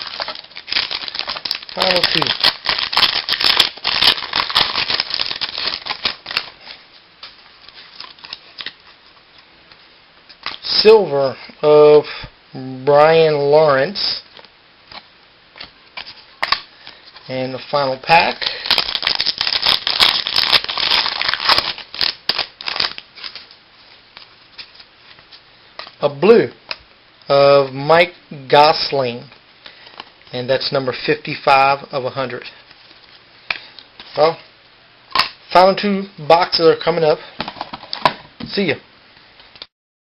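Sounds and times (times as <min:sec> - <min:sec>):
cards clicking and rustling: 0:00.0 - 0:08.8
wrapper tearing and crinkling: 0:00.0 - 0:09.0, 0:17.6 - 0:23.5.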